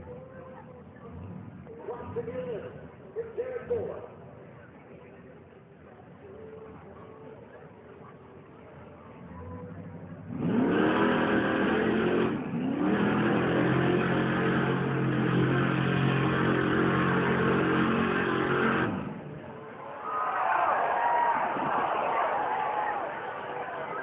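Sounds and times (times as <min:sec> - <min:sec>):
monster truck engine revving: 0:10.2 - 0:19.6.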